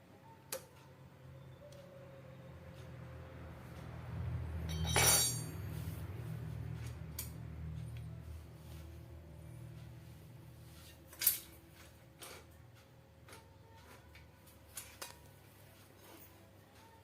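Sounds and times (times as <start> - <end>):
hard parts clinking together: 4.7 - 5.6.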